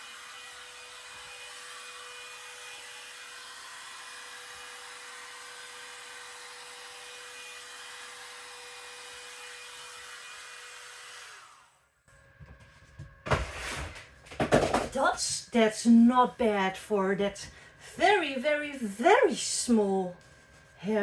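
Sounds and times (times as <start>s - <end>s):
hairdryer running with a whine: 0.0s - 21.0s.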